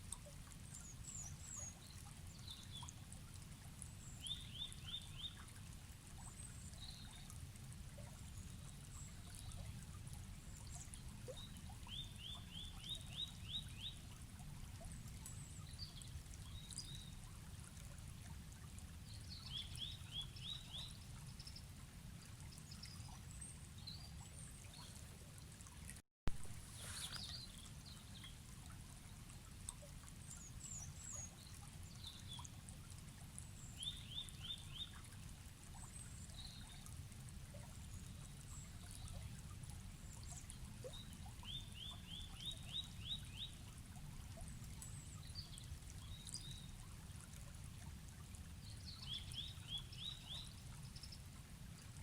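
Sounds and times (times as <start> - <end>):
flowing river water: 0.0 - 52.0
small birds chirping: 26.5 - 28.3.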